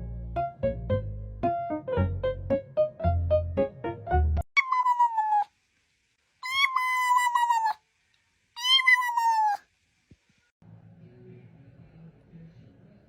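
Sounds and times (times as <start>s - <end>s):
cat meowing: 4.6s - 5.5s, 6.4s - 7.8s, 8.6s - 9.6s.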